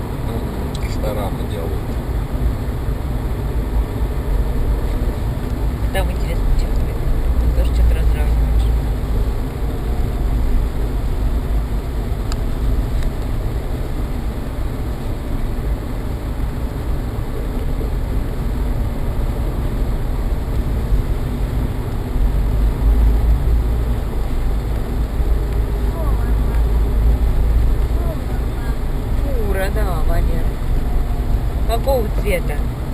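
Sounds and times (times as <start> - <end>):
car cabin road and engine rumble: 0.0 - 32.9.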